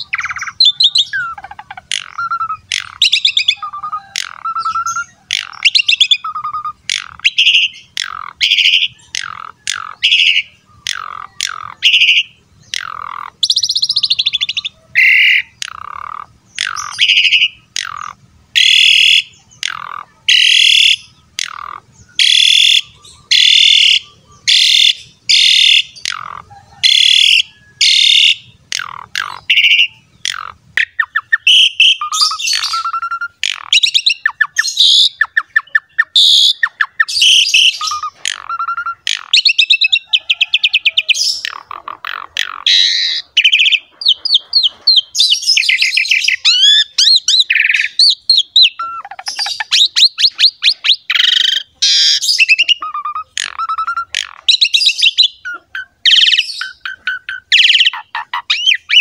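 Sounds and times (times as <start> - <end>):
starling singing: 0.0 - 59.0.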